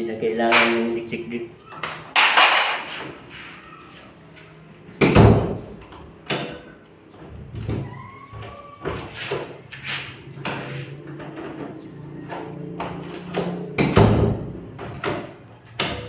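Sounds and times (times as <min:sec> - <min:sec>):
door lock knocks and clunks: 0:05.0 - 0:06.6, 0:12.8 - 0:16.0.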